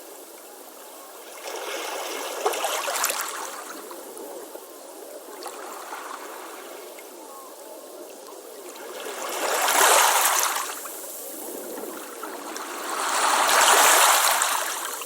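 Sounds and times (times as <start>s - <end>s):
waves washing on beach: 8.6s - 15.0s.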